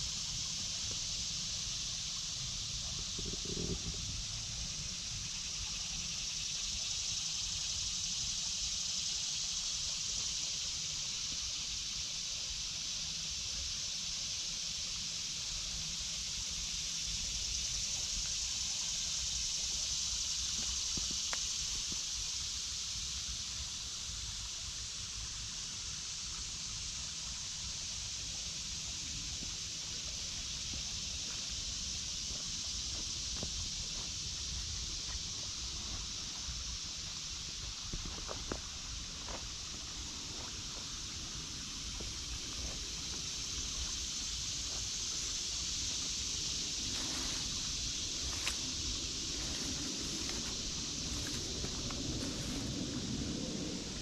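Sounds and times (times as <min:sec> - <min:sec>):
cicada chorus drone: 0:00.0 - 0:54.0.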